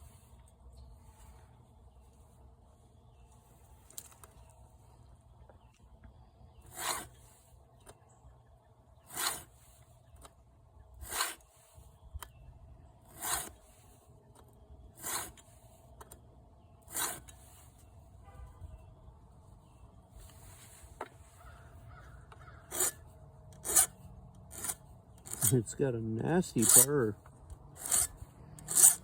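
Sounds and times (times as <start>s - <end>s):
file rasping on chain tooth: 6.7s - 7.2s, 9.1s - 9.5s, 11.0s - 11.4s, 13.1s - 13.6s, 15.0s - 15.4s, 16.9s - 17.4s, 22.6s - 25.6s, 26.6s - 27.1s, 27.8s - 29.0s.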